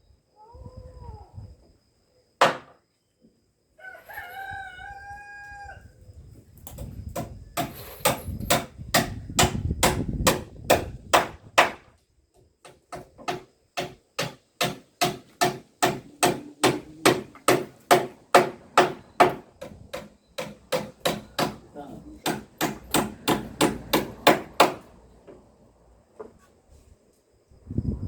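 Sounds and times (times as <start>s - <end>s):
hammer striking wood: 2.4s - 2.8s, 7.2s - 11.9s, 12.6s - 25.4s.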